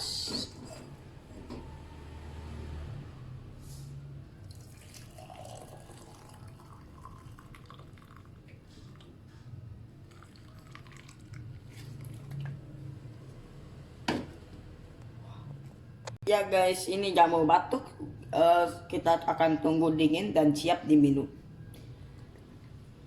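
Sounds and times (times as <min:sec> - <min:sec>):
liquid trickling and dripping: 0:04.4 - 0:09.2, 0:10.0 - 0:12.6.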